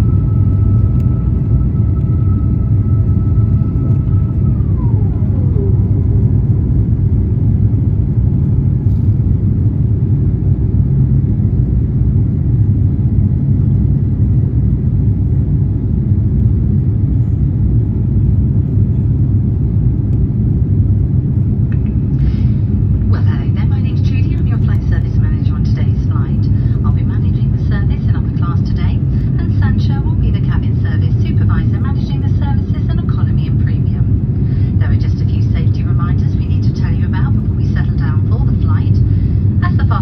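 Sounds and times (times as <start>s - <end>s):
faint tone gliding down: 0.0s - 7.4s
aircraft engine rumble in cabin: 0.0s - 40.0s.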